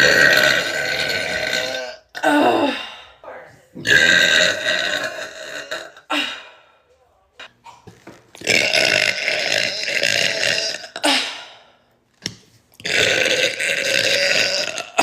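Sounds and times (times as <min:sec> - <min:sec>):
woman burping: 0:00.0 - 0:02.9, 0:03.8 - 0:06.5, 0:07.6 - 0:11.5, 0:12.8 - 0:15.0.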